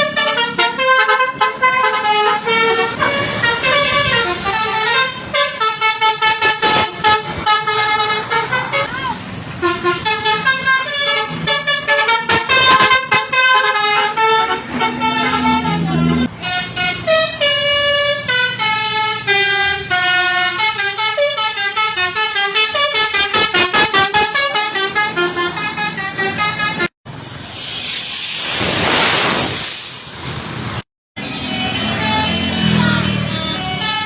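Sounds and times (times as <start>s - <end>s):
bus musical horn melody: 0.0s - 27.0s, 31.2s - 34.0s
rush of noise: 27.1s - 30.8s.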